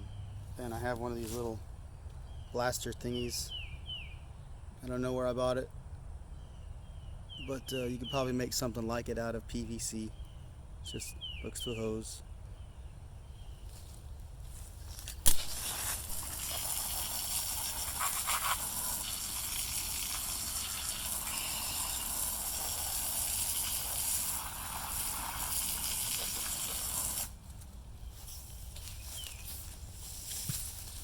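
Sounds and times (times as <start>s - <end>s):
water spraying hiss: 15.3s - 27.4s.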